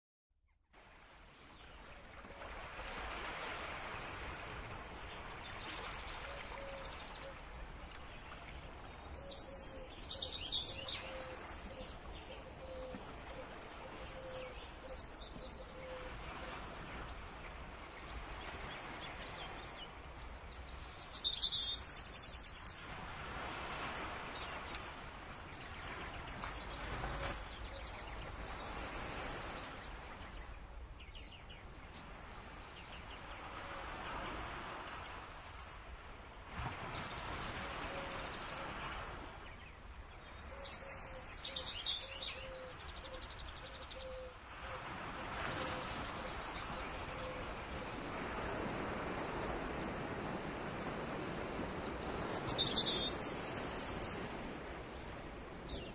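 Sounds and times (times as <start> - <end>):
birds chirping: 5.0 - 23.2, 39.4 - 44.4, 45.6 - 55.9.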